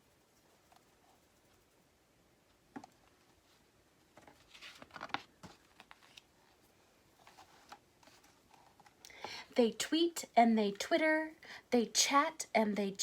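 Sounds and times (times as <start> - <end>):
paper page rustling: 4.1 - 6.6, 7.2 - 9.0.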